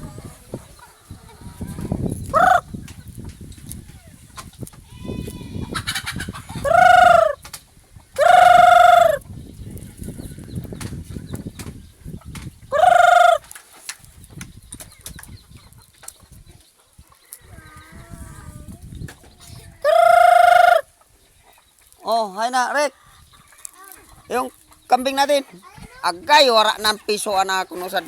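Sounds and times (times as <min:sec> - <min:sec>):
farm animals calling: 0:00.0 - 0:02.7, 0:05.0 - 0:07.4, 0:08.0 - 0:10.7, 0:12.7 - 0:13.6, 0:19.5 - 0:28.0
faint animal sounds: 0:16.5 - 0:18.8.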